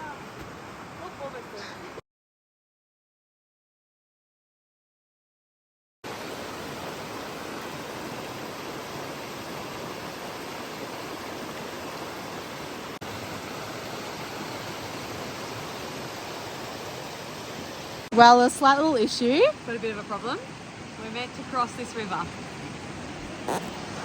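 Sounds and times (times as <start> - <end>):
river rushing: 6.1 - 24.0.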